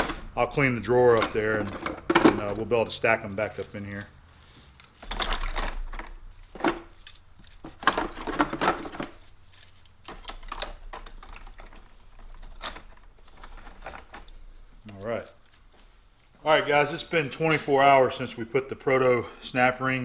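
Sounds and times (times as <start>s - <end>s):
metal pliers clinking: 6.9s - 7.6s, 9.4s - 10.6s.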